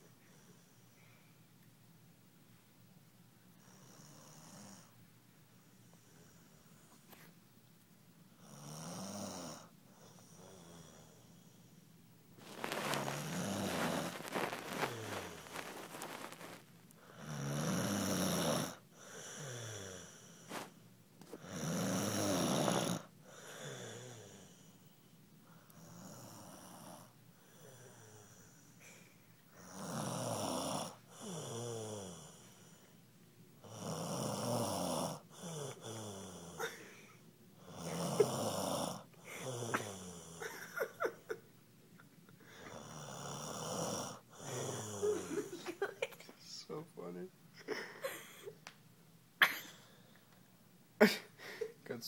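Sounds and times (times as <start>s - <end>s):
quiet breaths: 0.0s - 48.6s, 49.6s - 52.0s
loud nasal snoring: 8.4s - 9.7s, 12.4s - 20.7s, 21.4s - 24.7s, 29.6s - 32.6s, 33.6s - 36.6s, 37.6s - 40.4s, 42.6s - 45.3s.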